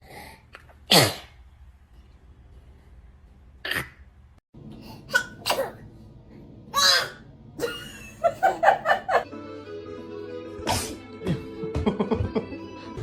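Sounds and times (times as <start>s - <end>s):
baby sneezing: 4.9s - 5.8s, 10.6s - 11.0s.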